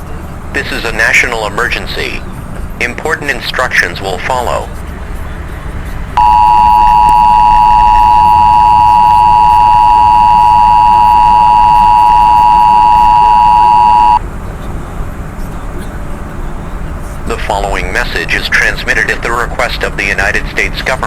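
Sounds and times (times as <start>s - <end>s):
two-tone alarm tone: 6.2s - 14.2s.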